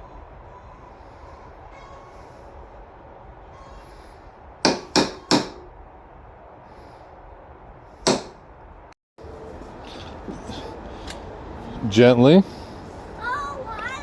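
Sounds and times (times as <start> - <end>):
hammer strikes: 4.6 - 5.7, 8.1 - 8.4.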